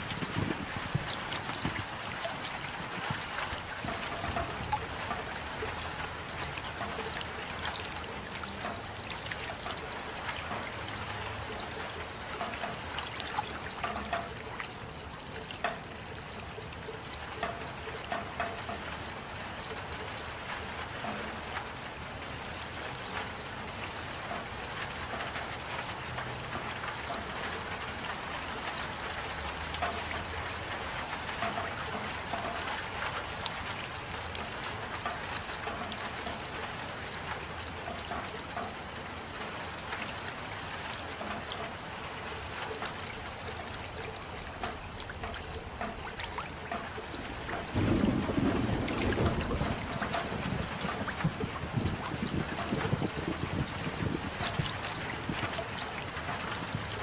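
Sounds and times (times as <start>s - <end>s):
steady rain: 0.0s - 57.0s
water dripping and trickling: 0.0s - 57.0s
drops ticking: 0.1s - 21.8s, 37.3s - 57.0s.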